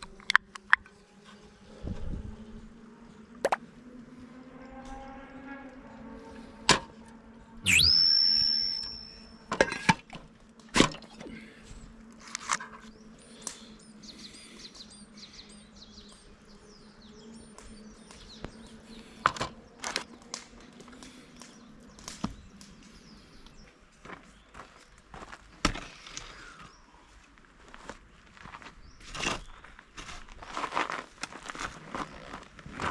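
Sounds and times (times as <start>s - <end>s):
high whistle-like tone: 7.7s - 9.3s.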